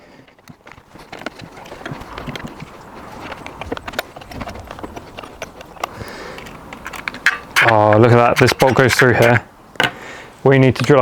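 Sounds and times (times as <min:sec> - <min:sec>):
plastic parts handled: 0:00.2 - 0:10.0
hand tool clicking on screws: 0:00.4 - 0:10.0.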